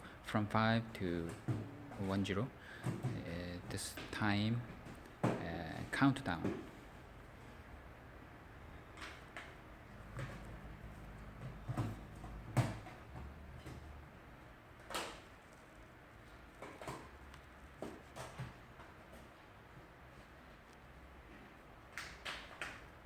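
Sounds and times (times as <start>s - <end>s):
hard objects knocking and clicking: 10.0s - 14.0s.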